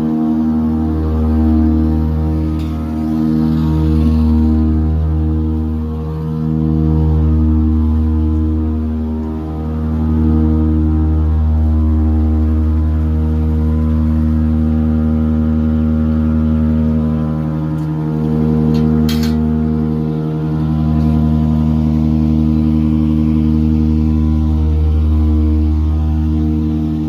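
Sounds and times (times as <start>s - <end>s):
truck engine humming: 0.0s - 27.0s.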